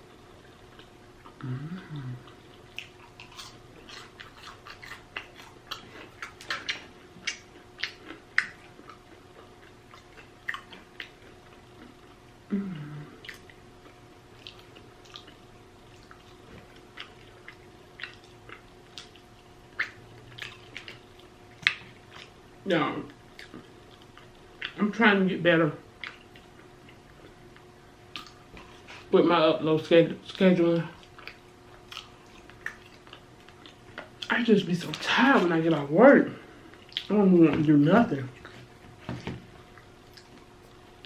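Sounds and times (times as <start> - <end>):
wet chewing: 0.2 - 12.2, 13.2 - 22.4, 23.0 - 24.8, 26.0 - 29.1, 30.3 - 35.5, 36.7 - 37.2, 38.3 - 41.0
lip smacking: 0.5 - 12.1, 12.7 - 22.4, 26.0 - 29.1, 36.7 - 37.1
person humming: 1.4 - 2.3, 12.5 - 13.2.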